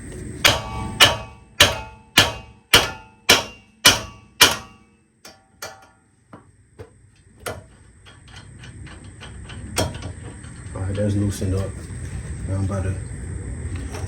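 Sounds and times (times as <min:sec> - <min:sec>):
hammer striking metal: 0:00.4 - 0:06.1, 0:09.8 - 0:10.2.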